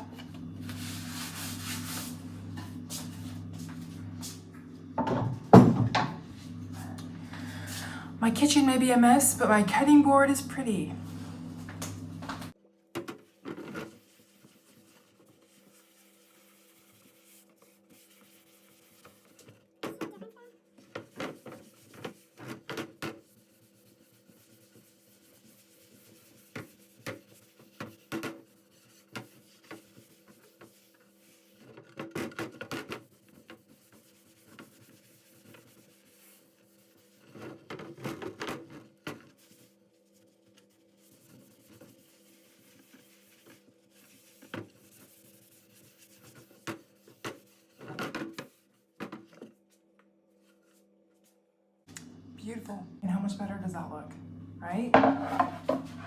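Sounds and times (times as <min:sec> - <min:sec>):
faint steady hum: 0:00.0 - 0:12.6, 0:51.9 - 0:56.0
wooden cutting board rubbing: 0:55.0 - 0:56.0.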